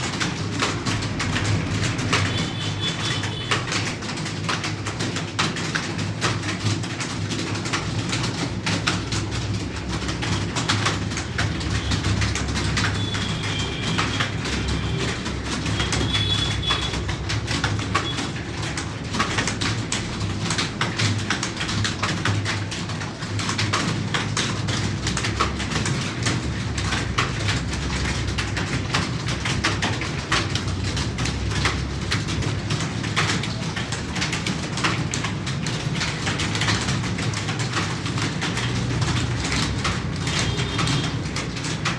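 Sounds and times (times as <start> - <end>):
computer keyboard typing: 0.0 - 41.9.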